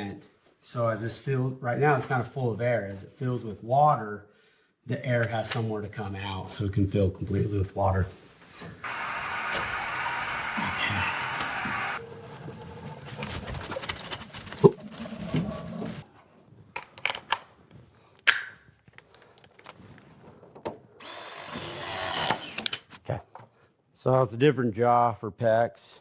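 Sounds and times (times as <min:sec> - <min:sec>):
cordless power tool motor: 0:08.8 - 0:12.0, 0:21.0 - 0:22.7.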